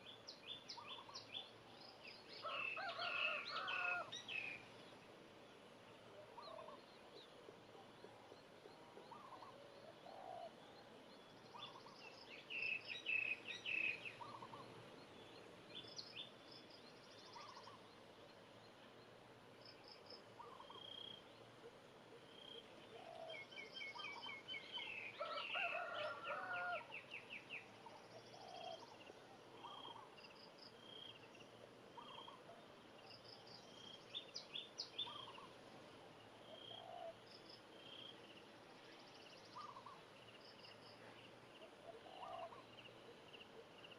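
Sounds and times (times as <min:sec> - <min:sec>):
faint chicken calls: 0:02.3 - 0:04.6, 0:22.9 - 0:30.2.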